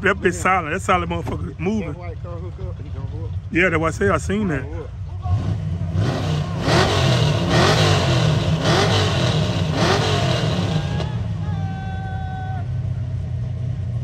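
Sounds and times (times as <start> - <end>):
car engines revving: 0.0 - 14.0
people shouting: 10.5 - 13.0.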